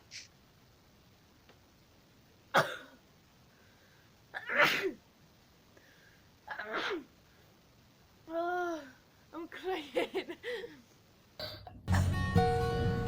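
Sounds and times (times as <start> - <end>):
person sneezing: 4.4 - 5.0.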